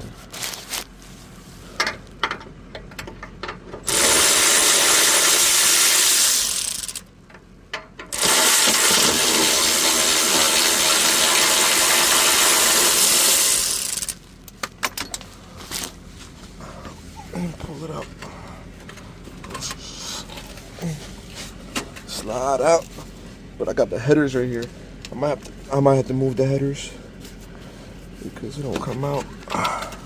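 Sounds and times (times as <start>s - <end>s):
tool handling clicks and knocks: 1.8s - 3.9s, 7.2s - 8.2s, 14.4s - 15.3s
power tool running: 3.8s - 7.1s, 8.1s - 14.2s.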